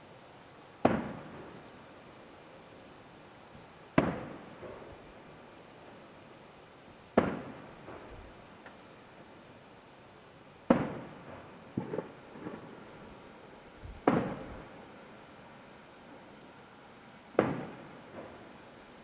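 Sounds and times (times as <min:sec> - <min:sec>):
distant fireworks bangs: 0:00.8 - 0:01.7, 0:04.0 - 0:05.0, 0:07.2 - 0:08.4, 0:10.7 - 0:14.9, 0:17.3 - 0:18.9
small fireworks pops: 0:00.8 - 0:01.9, 0:03.5 - 0:06.4, 0:07.0 - 0:09.3, 0:10.6 - 0:14.9, 0:17.3 - 0:19.0.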